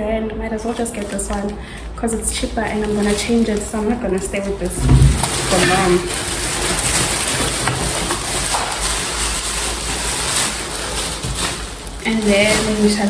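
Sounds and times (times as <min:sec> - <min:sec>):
items rustling and crinkling: 0:00.4 - 0:13.0.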